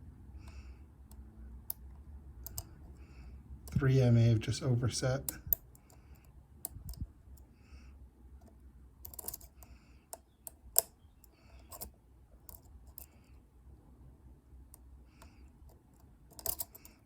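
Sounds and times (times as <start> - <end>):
lock pick metallic clicks: 2.4 - 2.7, 9.0 - 11.0, 11.6 - 11.9, 14.7 - 17.0.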